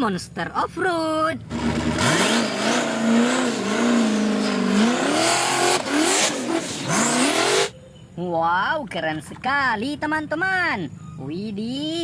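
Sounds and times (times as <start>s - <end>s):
car engine revving: 1.5s - 7.7s.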